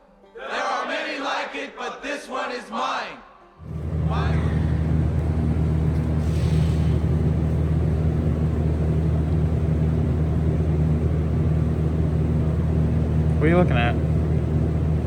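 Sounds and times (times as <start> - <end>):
low machine hum: 3.6 - 15.0.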